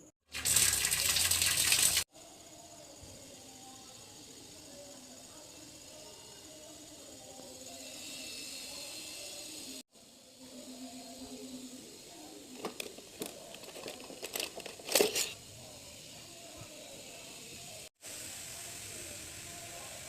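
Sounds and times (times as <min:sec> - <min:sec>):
faint steady hiss: 0:02.2 - 0:20.0
rustling and crinkling handling: 0:12.6 - 0:15.4.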